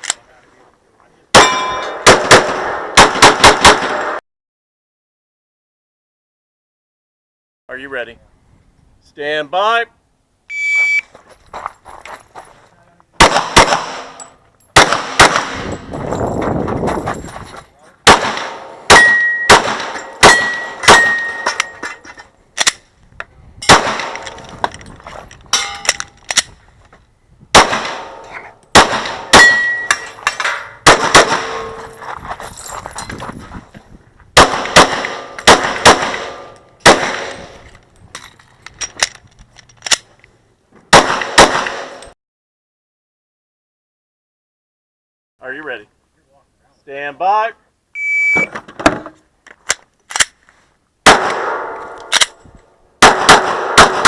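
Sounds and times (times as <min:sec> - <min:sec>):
pistol shots: 0:01.3 - 0:04.2, 0:13.2 - 0:14.2, 0:14.8 - 0:15.8, 0:18.0 - 0:21.7, 0:23.7 - 0:24.4, 0:27.5 - 0:31.8, 0:34.4 - 0:37.6, 0:40.9 - 0:42.0, 0:51.0 - 0:52.3, 0:53.0 - 0:54.0.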